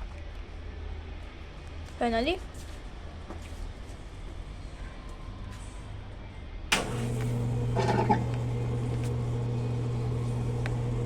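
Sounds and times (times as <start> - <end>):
washing machine click: 6.7 - 9.2
washing machine motor humming: 6.7 - 11.0.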